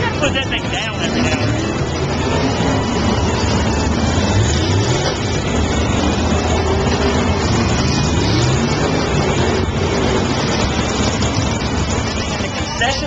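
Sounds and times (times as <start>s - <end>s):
race car engines at speed: 0.0s - 13.0s.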